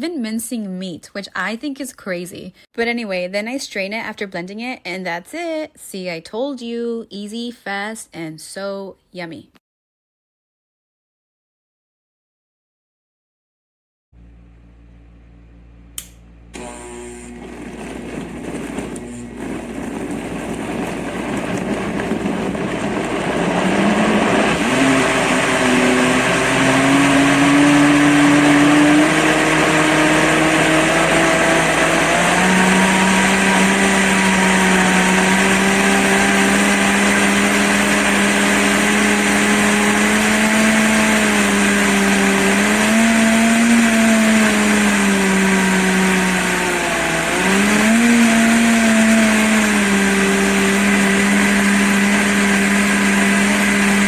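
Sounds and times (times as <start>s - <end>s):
blender switch click: 16.0s - 17.4s
blender motor whirring: 16.0s - 54.0s.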